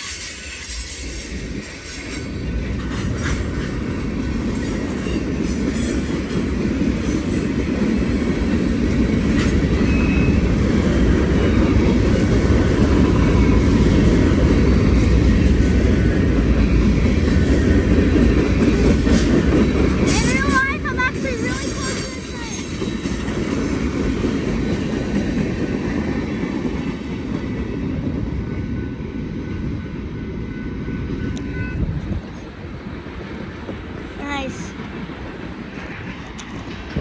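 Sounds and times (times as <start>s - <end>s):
wheels clacking over rail joints: 0.0s - 28.0s
freight train wheels rumbling: 0.0s - 37.0s.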